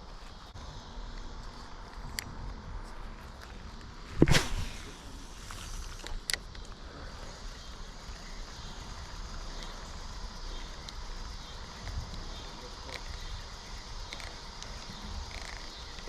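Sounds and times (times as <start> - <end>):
background noise: 0.0 - 16.0
fishing rod swish: 4.2 - 6.0.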